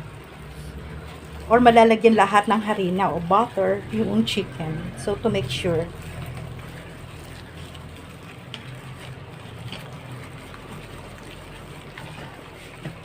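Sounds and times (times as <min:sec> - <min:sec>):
low steady hum: 0:00.0 - 0:13.0
wet squishing of mixed batter: 0:00.0 - 0:13.0.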